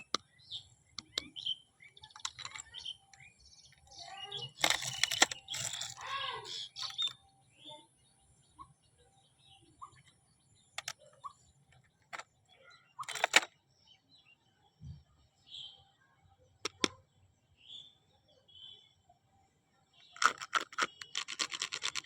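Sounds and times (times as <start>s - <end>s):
sharp clicks and taps: 0.9s - 1.3s, 16.6s - 17.0s.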